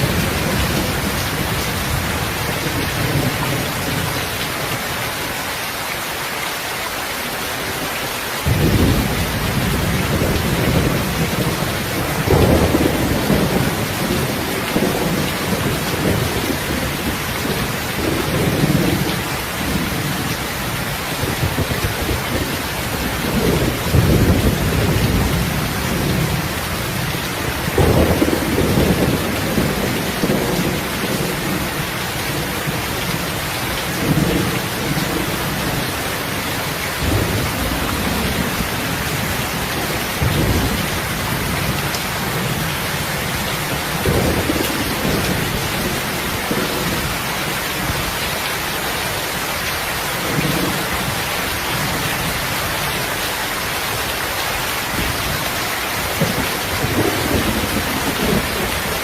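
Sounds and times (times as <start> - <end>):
heavy rain hiss: 0.0 - 59.0
low rolling thunder: 8.5 - 48.1, 56.1 - 59.0.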